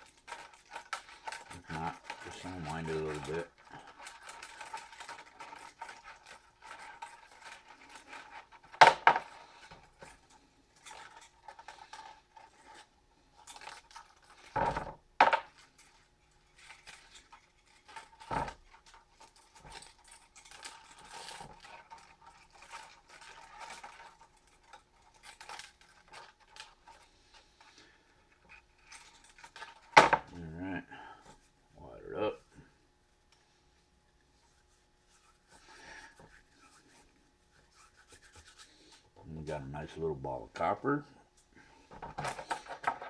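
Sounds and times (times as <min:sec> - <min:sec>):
wire scratching and rustling: 0:00.0 - 0:14.6, 0:34.3 - 0:40.8
metal parts clinking: 0:42.0 - 0:43.0.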